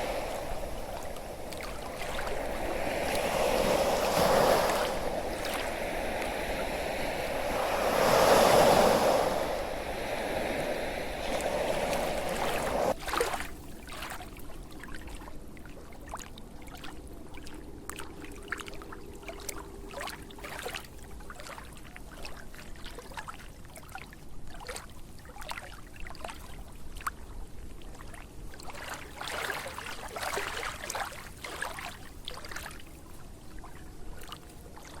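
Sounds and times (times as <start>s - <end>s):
waves rushing: 0.0s - 13.5s.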